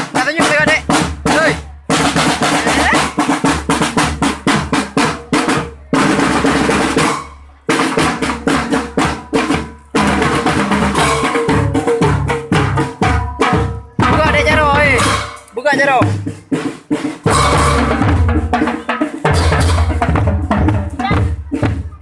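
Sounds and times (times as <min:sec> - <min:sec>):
fast loud drumming: 0:00.0 - 0:22.0
ringing drum hit: 0:17.3 - 0:18.5.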